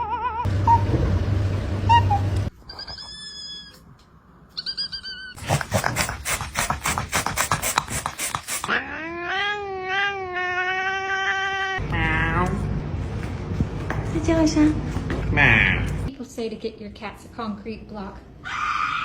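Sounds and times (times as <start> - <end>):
cat yowling: 0.0 - 0.5, 8.7 - 12.4, 18.4 - 19.0
cat chirping: 4.5 - 5.4.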